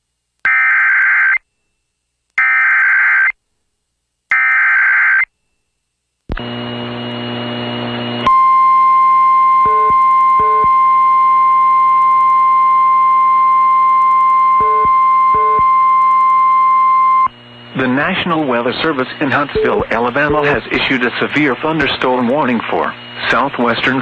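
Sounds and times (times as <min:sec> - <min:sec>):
warbling data tones: 0:18.4 - 0:20.7.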